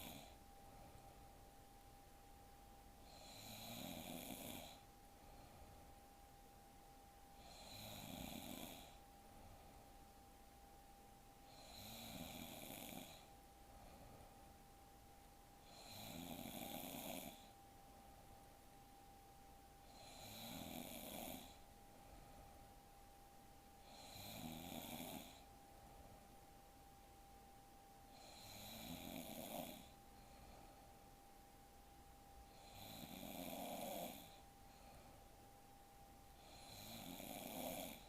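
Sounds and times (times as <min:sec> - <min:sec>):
woman snoring: 0:00.0 - 0:00.4, 0:03.0 - 0:04.9, 0:07.4 - 0:09.0, 0:11.5 - 0:13.3, 0:15.6 - 0:17.6, 0:19.8 - 0:21.6, 0:23.8 - 0:25.5, 0:28.1 - 0:30.0, 0:32.5 - 0:34.4, 0:36.4 - 0:38.0
faint high hum: 0:00.0 - 0:38.0
quiet breathing: 0:00.0 - 0:38.0.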